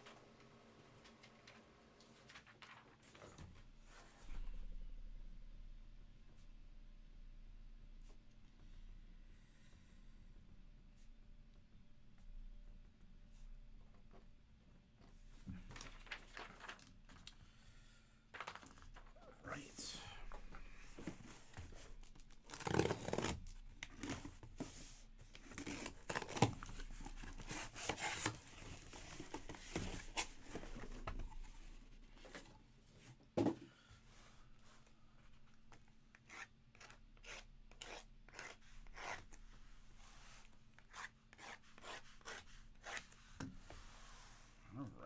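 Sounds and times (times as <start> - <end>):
cardboard and plastic film rubbing: 21.7 - 24.4.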